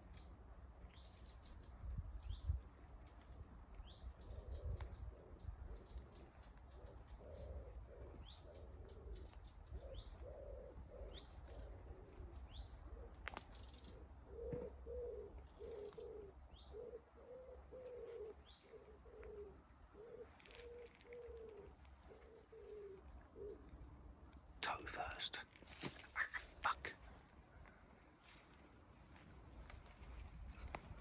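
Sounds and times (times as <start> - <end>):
wood pigeon cooing: 4.1 - 24.2.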